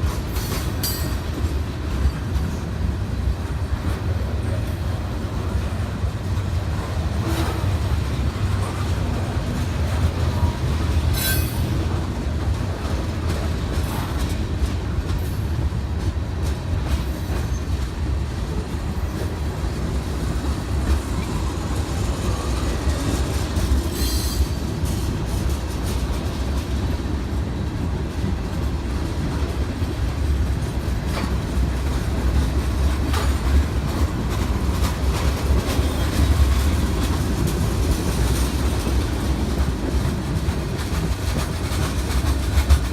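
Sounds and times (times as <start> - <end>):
train rumbling on rails: 0.0 - 42.9
wheels clicking over track: 28.2 - 42.9.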